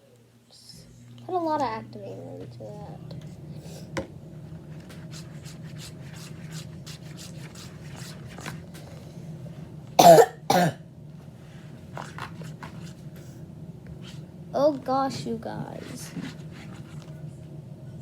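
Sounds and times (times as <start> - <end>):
person coughing loudly: 10.0 - 10.8.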